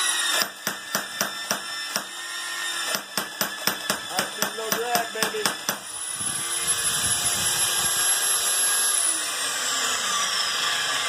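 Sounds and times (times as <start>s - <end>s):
power hammer motor whine: 0.0s - 11.0s
power hammer clatter: 2.8s - 5.9s.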